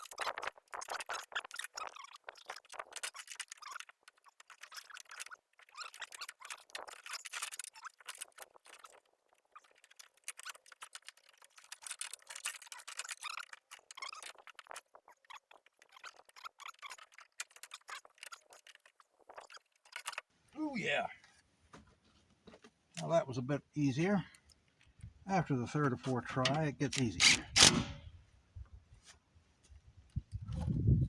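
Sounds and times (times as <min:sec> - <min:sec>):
wiring harness scratching and rustling: 0:00.0 - 0:20.3.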